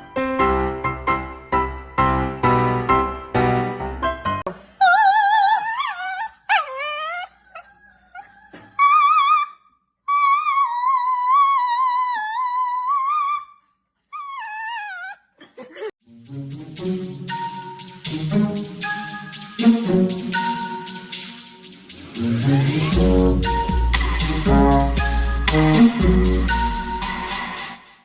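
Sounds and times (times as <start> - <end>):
background music: 0.0 - 4.5, 16.1 - 28.0
puppy howling: 4.8 - 15.2.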